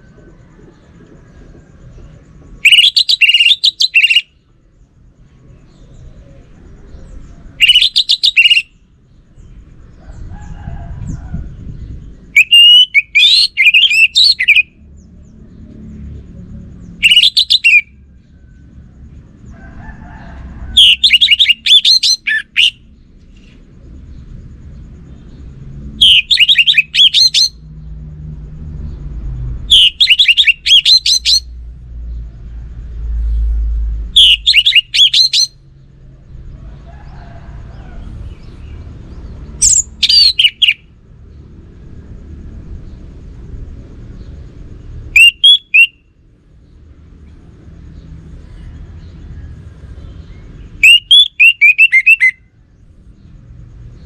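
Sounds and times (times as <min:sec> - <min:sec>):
thrush singing whistled notes: 0:01.9 - 0:04.5, 0:07.5 - 0:09.5, 0:12.0 - 0:14.8, 0:16.9 - 0:18.1, 0:20.8 - 0:23.6, 0:25.1 - 0:27.8, 0:29.7 - 0:32.3, 0:34.1 - 0:35.7, 0:39.2 - 0:41.0, 0:45.1 - 0:46.7, 0:50.0 - 0:52.7
faint low rumble: 0:08.8 - 0:12.4, 0:31.2 - 0:34.5, 0:35.5 - 0:45.2.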